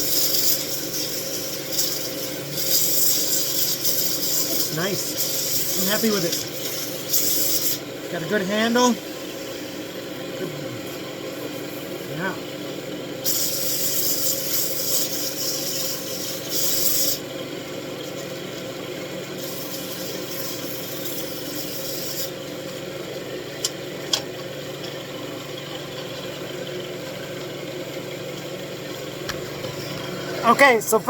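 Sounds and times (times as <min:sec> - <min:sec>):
sandpaper rubbing spinning wood: 0:00.0 - 0:07.8, 0:13.3 - 0:17.2, 0:19.4 - 0:22.4.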